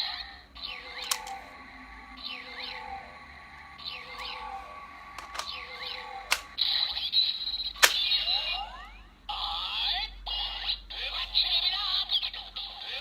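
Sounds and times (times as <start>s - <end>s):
sharp plastic clicks: 5.2s - 5.5s, 6.3s - 6.6s, 7.8s - 8.2s.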